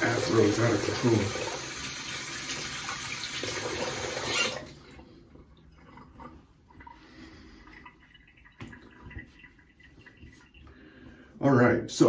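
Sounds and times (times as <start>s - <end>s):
sink tap running: 0.0s - 4.8s
faint water drips: 4.7s - 11.4s.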